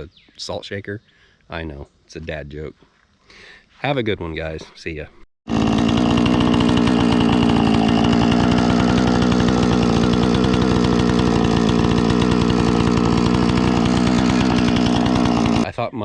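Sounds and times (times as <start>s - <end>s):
chainsaw engine running: 5.5s - 15.7s.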